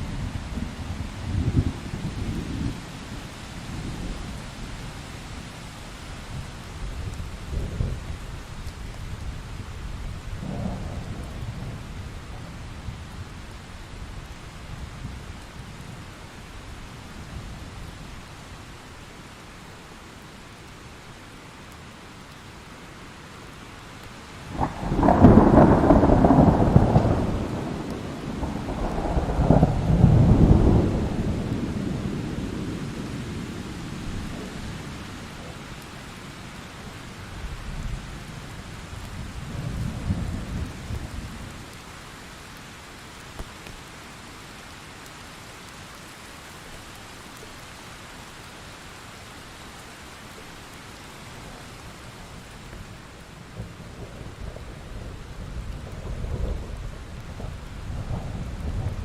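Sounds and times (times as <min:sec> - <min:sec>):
thunder rumbling: 0:00.0 - 0:03.0, 0:10.2 - 0:13.2, 0:24.5 - 0:35.0, 0:52.8 - 0:59.0
steady rain hiss: 0:00.0 - 0:59.0.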